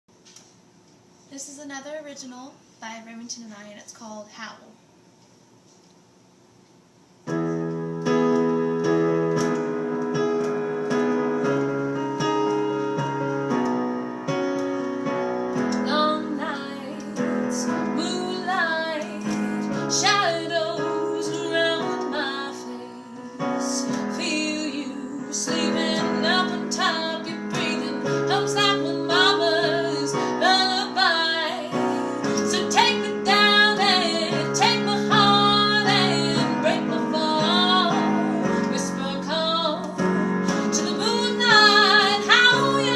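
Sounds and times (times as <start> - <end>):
jazz piano chords: 7.2 - 42.9
woman singing: 15.7 - 42.9.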